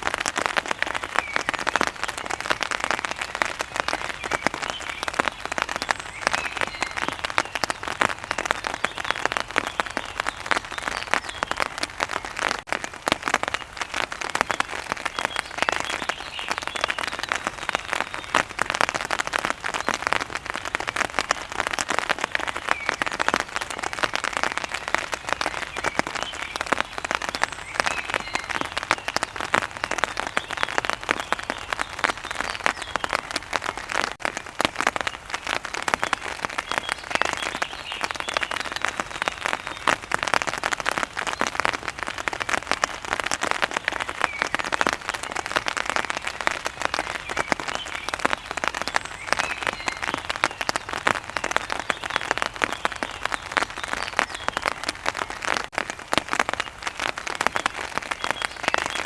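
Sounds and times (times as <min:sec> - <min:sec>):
rain drops pattering: 0:00.0 - 0:59.0.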